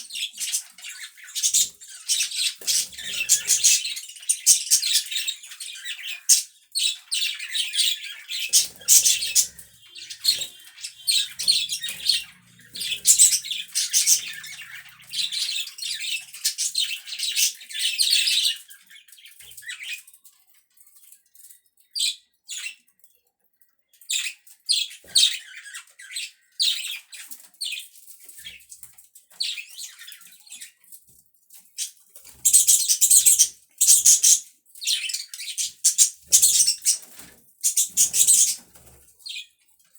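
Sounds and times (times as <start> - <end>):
budgerigars chirping: 0.0 - 19.0, 24.1 - 27.8, 31.8 - 39.5.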